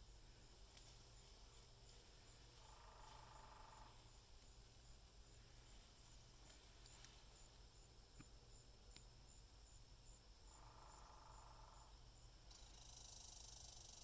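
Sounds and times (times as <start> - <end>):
insect chirps: 0.0 - 14.0
insect rapid rattle: 0.0 - 14.0
steady high insect buzz: 0.0 - 14.0.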